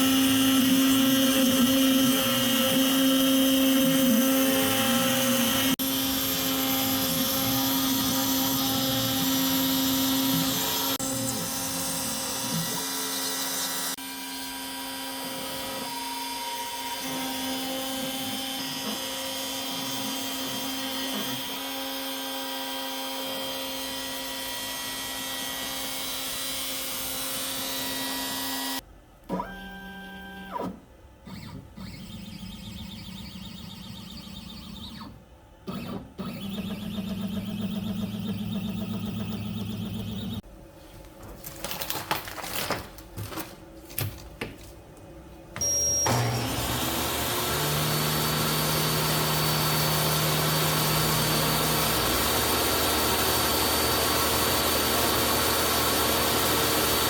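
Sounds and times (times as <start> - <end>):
router spindle hissing and humming: 0.0 - 21.5, 46.1 - 57.0
stepper motors whining: 31.3 - 40.4, 45.6 - 55.6.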